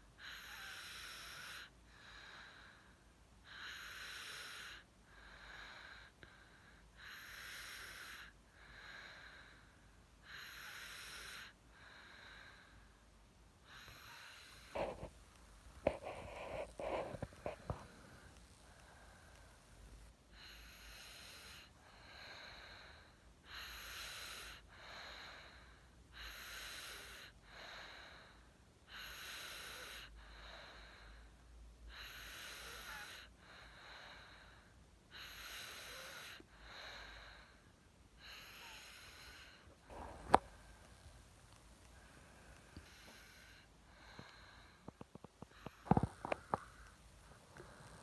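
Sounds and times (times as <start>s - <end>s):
baby snoring: 0.3s - 1.7s, 13.7s - 20.0s, 31.9s - 33.3s, 38.2s - 44.3s, 45.4s - 48.0s.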